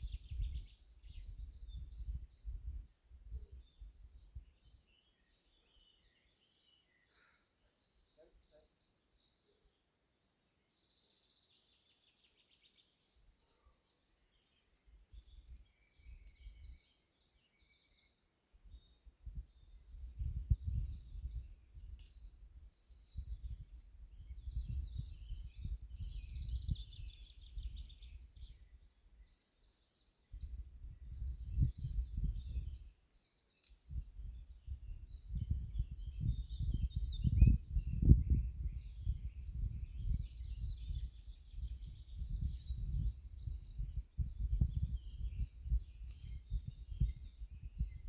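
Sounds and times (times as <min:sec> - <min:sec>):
songbirds singing: 0:00.0 - 0:48.0
low rumble on microphone: 0:34.0 - 0:48.0.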